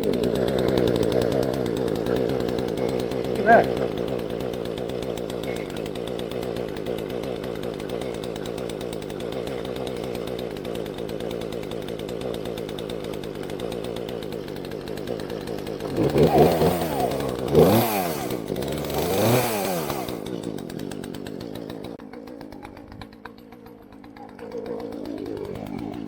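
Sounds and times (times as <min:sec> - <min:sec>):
chainsaw engine idling and revving: 0:00.0 - 0:26.0.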